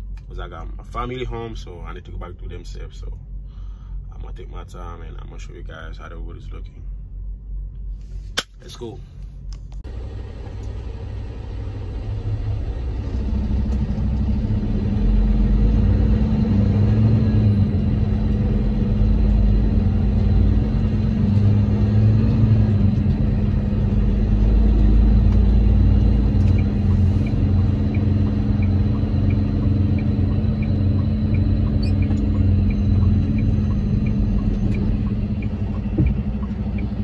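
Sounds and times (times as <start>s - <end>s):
truck engine rumble: 0.0s - 37.0s
road noise: 6.9s - 37.0s
light regular ticking: 25.3s - 37.0s.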